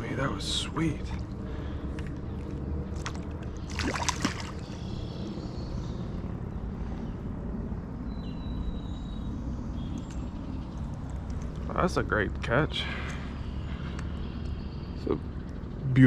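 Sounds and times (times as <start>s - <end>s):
water splashing: 3.0s - 4.8s.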